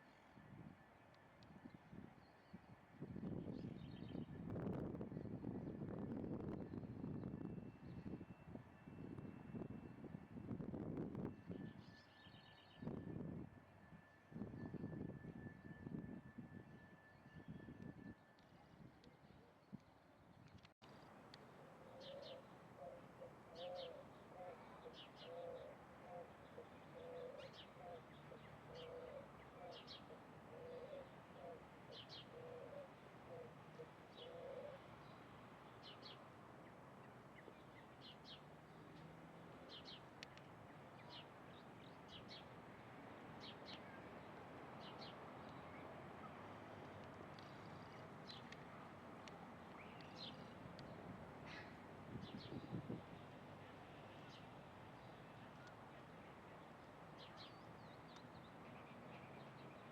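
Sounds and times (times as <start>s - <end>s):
dove cooing: 21.8s - 34.8s.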